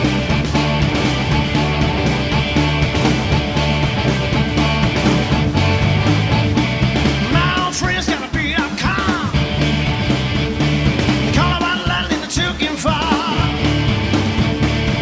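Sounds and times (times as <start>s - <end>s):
rock and roll band music: 0.0s - 15.0s
person singing: 7.3s - 9.4s, 11.3s - 13.8s.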